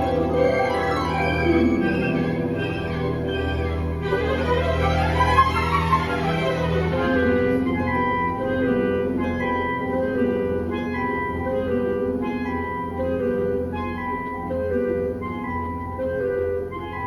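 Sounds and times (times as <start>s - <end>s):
instrumental music over speakers: 0.0s - 17.0s.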